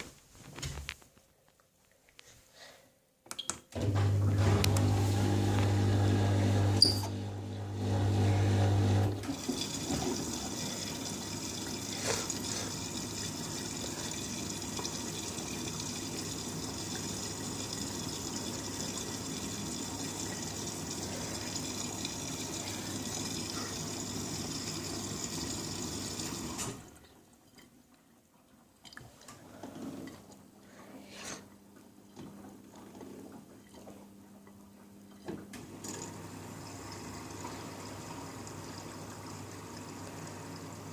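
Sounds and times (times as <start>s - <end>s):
washing machine electric hum: 3.7s - 40.9s
water rushing into machine: 7.7s - 26.9s.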